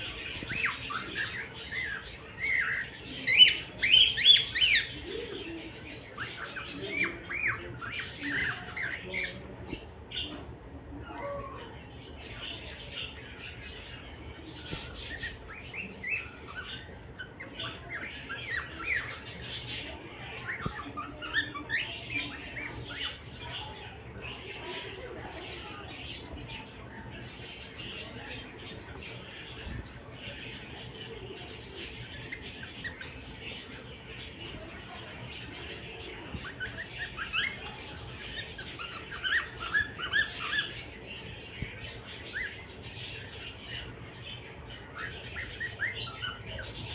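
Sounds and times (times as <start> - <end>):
small birds chirping and chattering: 0.0 - 46.9
cockatiel chirping: 36.3 - 40.8.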